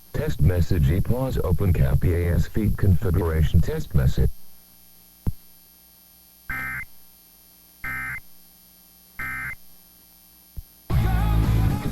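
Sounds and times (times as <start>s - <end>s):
warbling two-tone data bursts: 6.5s - 6.9s, 7.8s - 8.3s, 9.2s - 9.6s.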